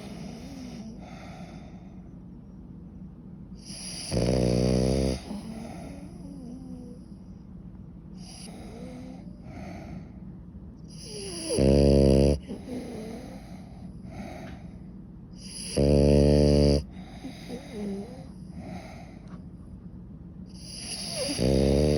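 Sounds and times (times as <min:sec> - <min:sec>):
dog snoring: 0:00.0 - 0:02.0, 0:03.6 - 0:07.1, 0:08.2 - 0:10.0, 0:10.9 - 0:14.6, 0:15.4 - 0:19.4, 0:20.5 - 0:21.9
dog hissing breaths: 0:08.2 - 0:10.1, 0:20.6 - 0:21.9.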